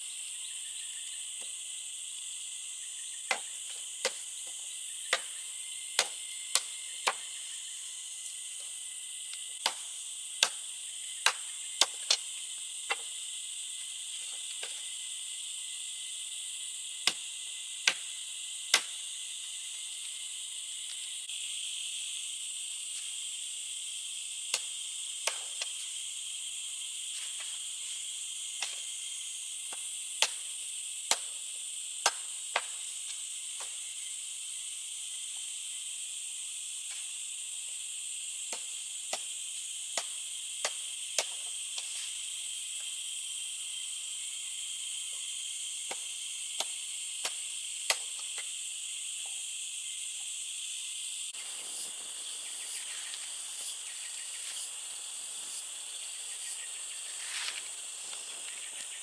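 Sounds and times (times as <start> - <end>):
insects chirring: 0.0 - 59.0
blade chopping wood: 3.3 - 4.3, 5.1 - 5.4, 6.0 - 7.5, 9.6 - 12.2, 17.0 - 17.3, 18.7 - 19.0, 24.5 - 25.8, 29.7 - 32.9.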